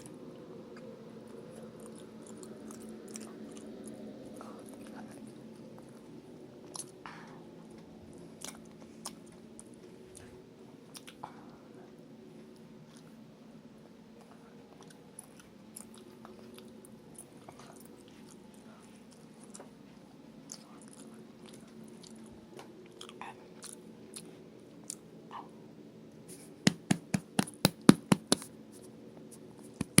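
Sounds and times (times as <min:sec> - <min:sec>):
person chewing: 0:01.5 - 0:04.0, 0:22.9 - 0:25.0.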